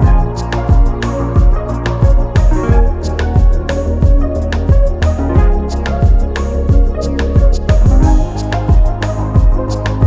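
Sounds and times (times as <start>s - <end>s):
kick drum: 0.0s - 9.7s
sustained keyboard chords: 0.0s - 10.0s
sharp percussion hits: 7.4s - 9.5s.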